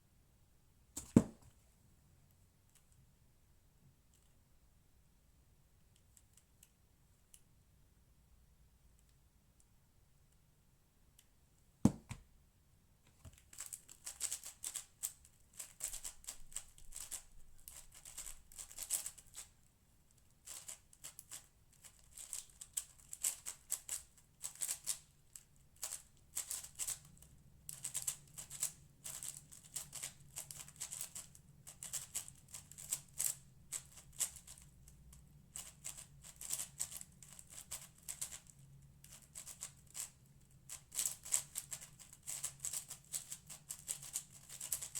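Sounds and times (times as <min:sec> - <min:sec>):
sharp knock: 0:01.0 - 0:01.5.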